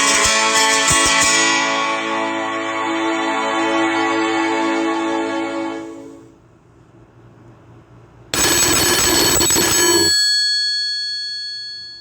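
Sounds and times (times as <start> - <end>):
phone ringtone bell: 8.4 - 12.0.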